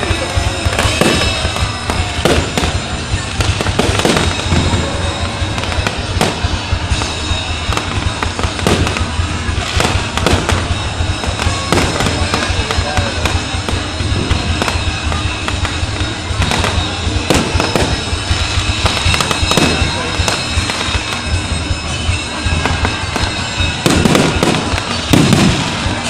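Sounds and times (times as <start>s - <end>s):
fireworks bangs and crackles: 0.0s - 26.0s
music playing: 0.0s - 26.0s.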